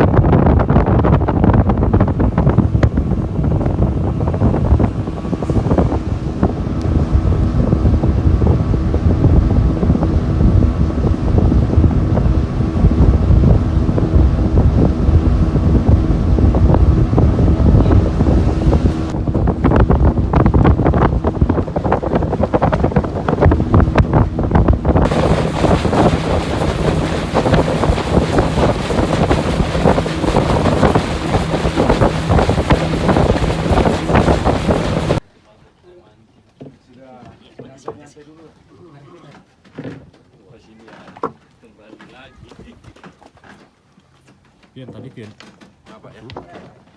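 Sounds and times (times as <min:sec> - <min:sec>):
outboard motor drone: 0:00.0 - 0:35.2
wind buffeting microphone: 0:00.0 - 0:35.2
rushing wind and water: 0:00.0 - 0:35.3.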